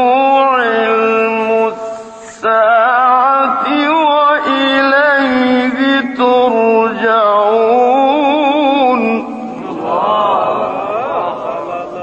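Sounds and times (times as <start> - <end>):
man chanting melodically: 0.0 - 12.0.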